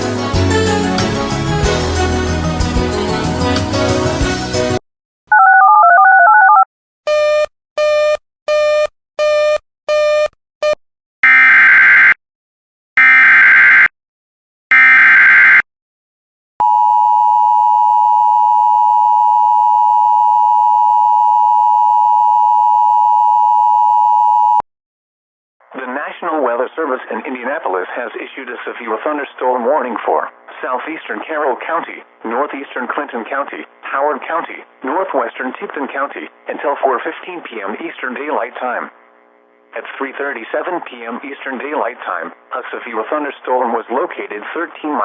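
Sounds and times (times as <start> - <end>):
music: 0.0 - 4.8.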